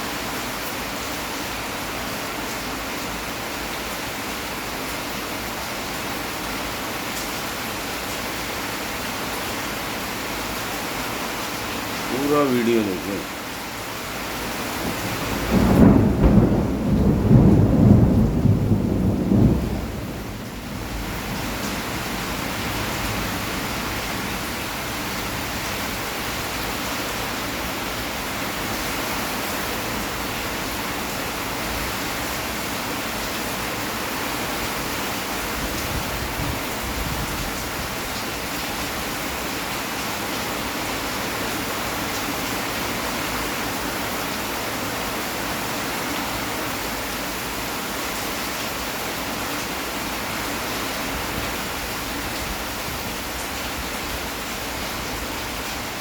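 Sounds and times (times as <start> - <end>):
heavy rain falling: 0.0 - 56.0
thunder rumbling: 14.8 - 21.6.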